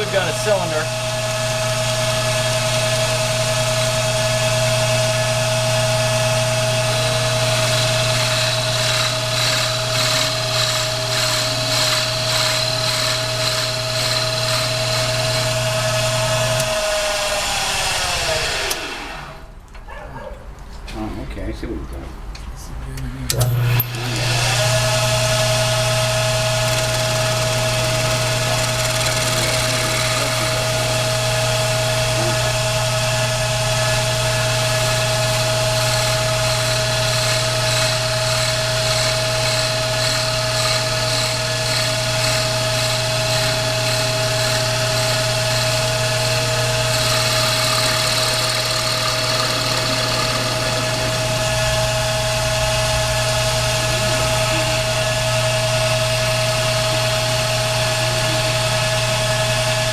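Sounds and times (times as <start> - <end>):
lathe motor whine and hum: 0.0 - 19.5, 23.3 - 59.9
tool cutting wood hiss: 23.4 - 33.2, 35.8 - 59.0.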